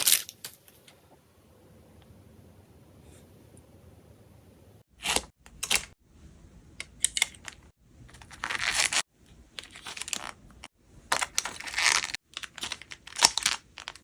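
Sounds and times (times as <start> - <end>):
packaging rustling: 11.1 - 14.0
plastic and paper crinkling: 11.1 - 14.0.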